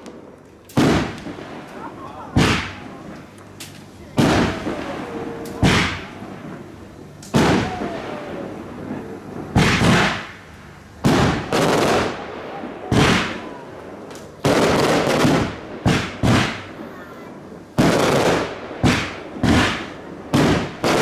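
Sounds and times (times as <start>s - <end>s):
crackling firework tails: 0.0s - 21.0s
firework shells bursting: 0.0s - 21.0s.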